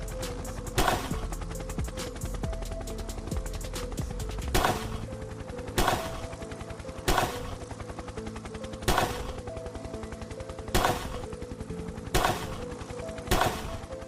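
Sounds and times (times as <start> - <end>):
background music: 0.0 - 14.0
gunshots: 0.8 - 1.3, 4.5 - 5.1, 5.8 - 6.3, 7.1 - 7.6, 8.9 - 9.4, 10.7 - 11.3, 12.1 - 12.7, 13.3 - 13.8.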